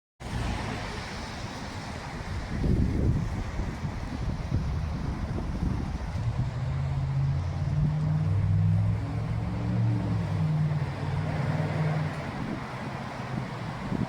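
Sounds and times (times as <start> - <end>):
wind rumbling on microphone: 0.2 - 14.0
low motor drone: 6.2 - 12.2.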